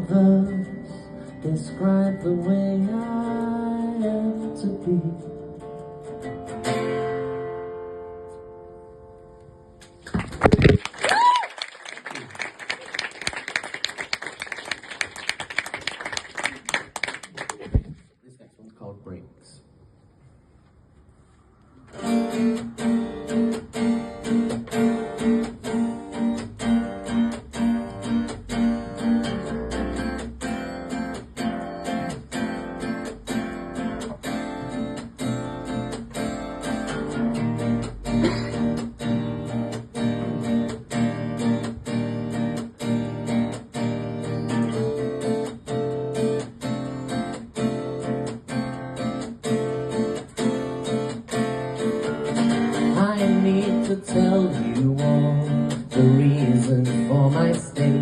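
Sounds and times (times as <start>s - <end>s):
acoustic guitar strumming: 0.0s - 10.8s, 21.9s - 58.0s.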